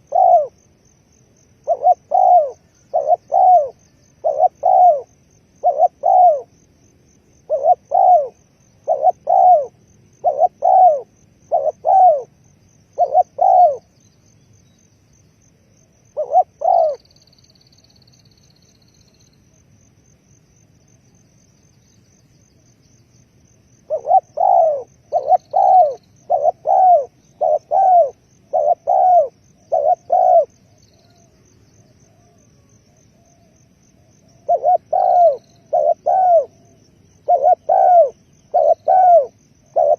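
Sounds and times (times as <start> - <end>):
dove cooing: 0.0 - 0.7, 1.6 - 6.6, 7.4 - 13.9, 16.1 - 17.2, 23.8 - 39.9.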